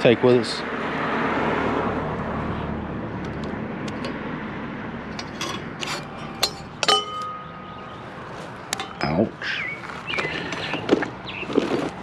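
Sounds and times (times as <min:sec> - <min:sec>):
passing traffic: 0:00.0 - 0:12.0
metal and glass junk clinking: 0:05.1 - 0:07.8, 0:08.7 - 0:09.2
metal piece ringing: 0:05.1 - 0:09.3.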